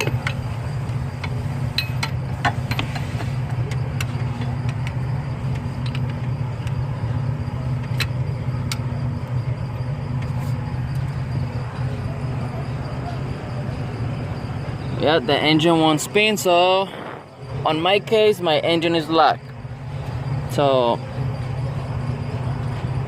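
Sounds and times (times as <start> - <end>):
low mechanical hum: 0.0 - 23.0.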